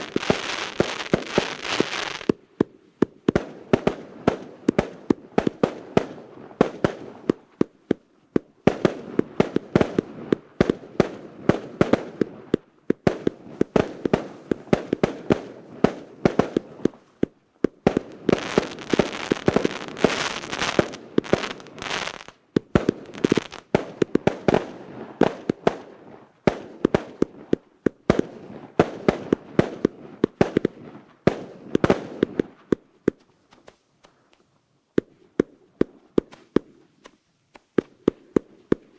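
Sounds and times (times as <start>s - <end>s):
fireworks thumps and bangs: 0.0s - 4.0s, 4.7s - 25.8s, 35.0s - 38.9s
fireworks crackling and hissing: 0.0s - 38.9s.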